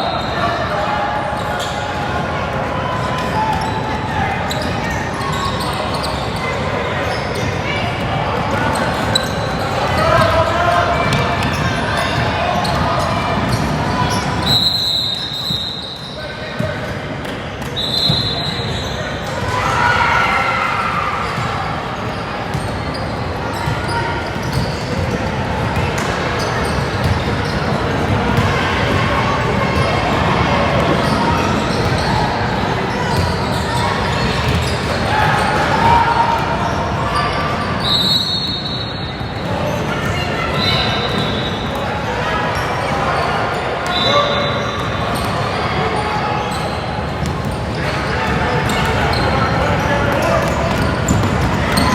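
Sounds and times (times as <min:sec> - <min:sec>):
echoing hubbub of voices: 0:00.0 - 0:51.9
people chattering and shouting: 0:00.0 - 0:51.9.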